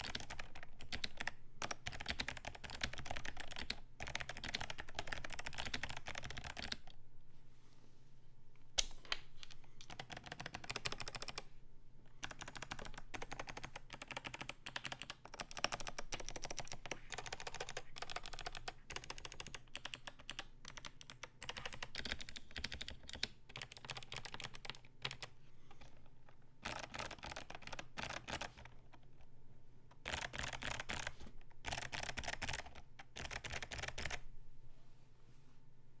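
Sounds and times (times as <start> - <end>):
mechanical keyboard typing: 0.0 - 6.9, 9.8 - 11.4, 12.2 - 26.0, 26.6 - 29.0, 29.9 - 34.2.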